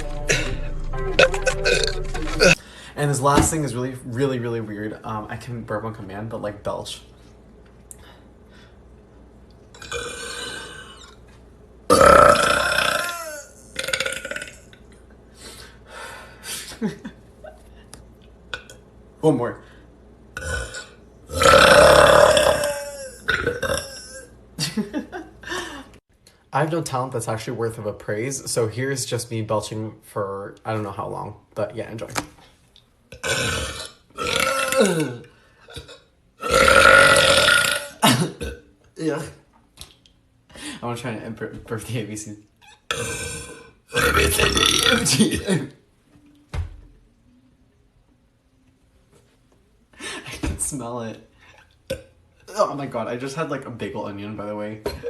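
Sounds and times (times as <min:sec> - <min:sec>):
person belching: 0:01.2 - 0:02.6, 0:09.8 - 0:11.2, 0:11.9 - 0:14.7, 0:20.4 - 0:24.3, 0:33.1 - 0:35.2, 0:35.8 - 0:38.6, 0:42.9 - 0:45.6.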